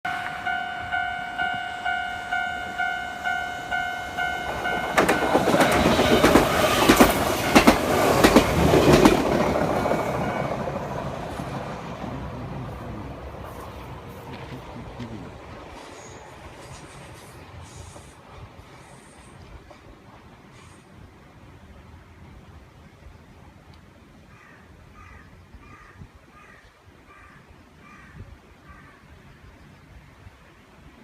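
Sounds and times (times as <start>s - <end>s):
level crossing alarm dinging: 0.0s - 6.3s
train wheels clacking over rail joints: 4.2s - 10.2s.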